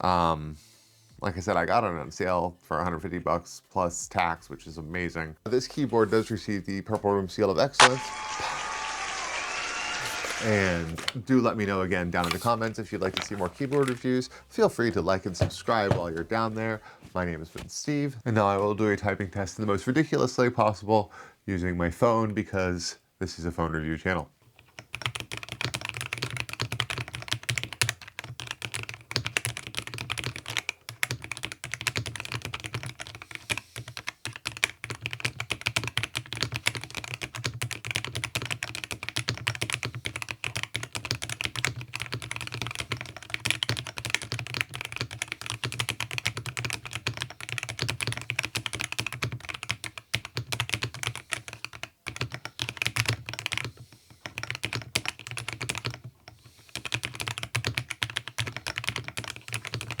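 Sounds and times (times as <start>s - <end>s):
mechanical keyboard typing: 7.8s - 11.2s, 12.2s - 14.2s, 24.8s - 60.0s.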